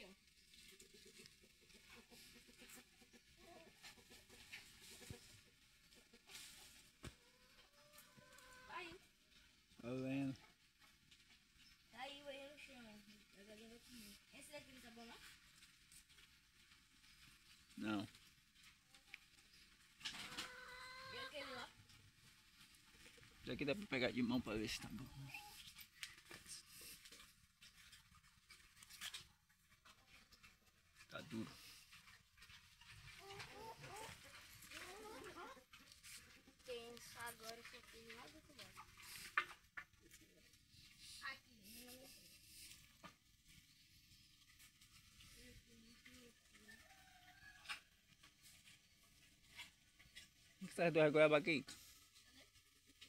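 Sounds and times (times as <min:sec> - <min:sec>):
faint rustles or clicks: 0:00.0 - 0:53.0
chickens clucking: 0:00.3 - 0:08.8, 0:18.8 - 0:21.5, 0:29.8 - 0:36.6.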